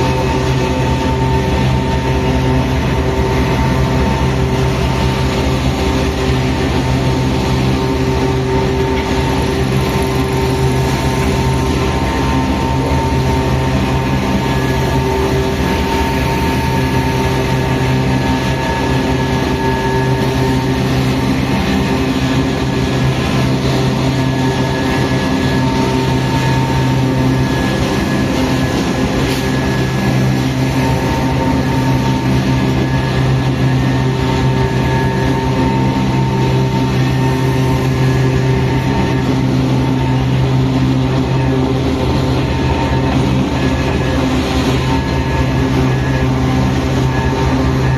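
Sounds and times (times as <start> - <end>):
diesel locomotive humming: 0.0 - 47.9.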